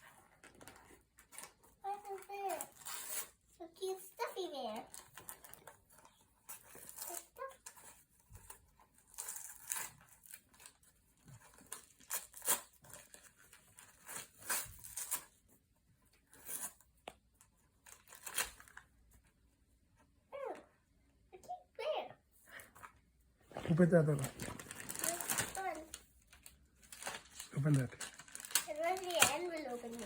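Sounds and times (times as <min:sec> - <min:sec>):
paper tearing and rustling: 0:00.4 - 0:03.5, 0:04.8 - 0:15.4, 0:23.6 - 0:30.0.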